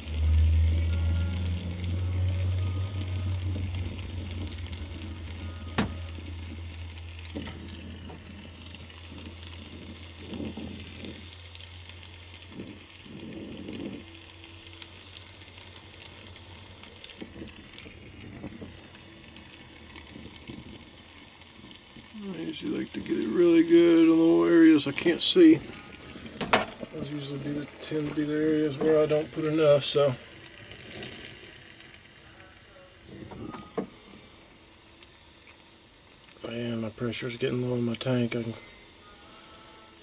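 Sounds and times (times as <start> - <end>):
low rumble: 0.0 - 21.4
torch flame hissing: 0.0 - 40.0.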